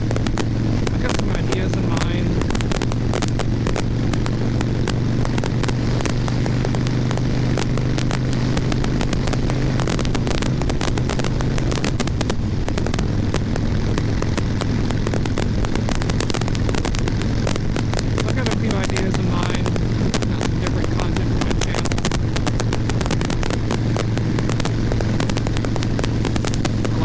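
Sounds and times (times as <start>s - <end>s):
microphone crackling pops: 0.0s - 27.0s
motorcycle engine running: 0.0s - 27.0s
wind noise on microphone: 0.0s - 27.0s.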